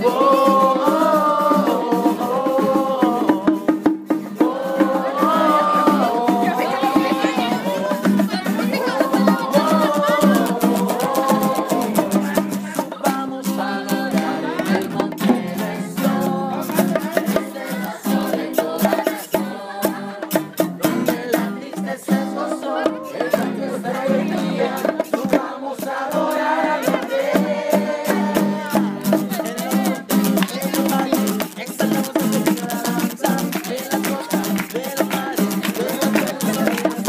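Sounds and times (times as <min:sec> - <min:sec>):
latin-style music: 0:00.0 - 0:37.0
rattling shaker: 0:04.9 - 0:13.1, 0:28.6 - 0:37.0.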